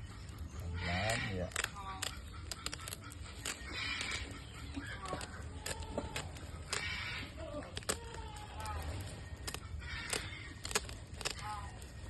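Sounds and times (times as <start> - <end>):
scissors snipping: 1.2 - 4.4, 7.6 - 11.9.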